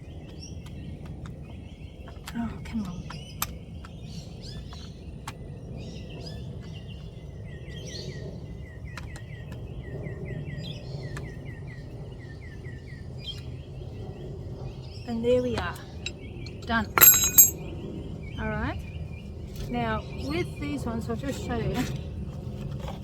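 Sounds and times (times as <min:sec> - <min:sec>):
birds chirping: 0:00.0 - 0:23.0.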